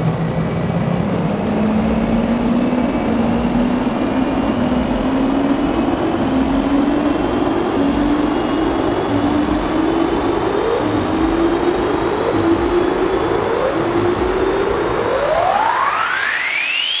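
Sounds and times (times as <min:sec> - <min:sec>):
loud rushing noise: 0:07.1 - 0:17.0
low wavering tone: 0:08.3 - 0:17.0.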